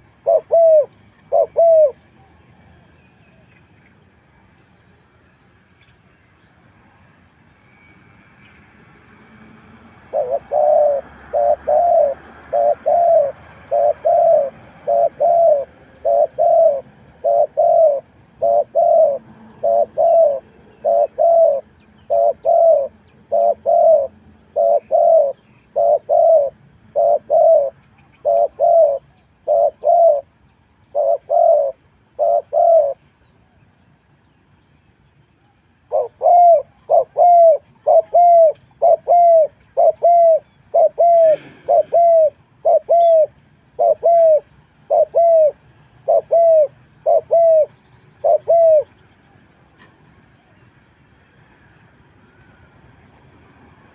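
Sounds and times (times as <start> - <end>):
dove cooing: 0.0 - 2.0, 10.0 - 33.0, 35.8 - 49.0.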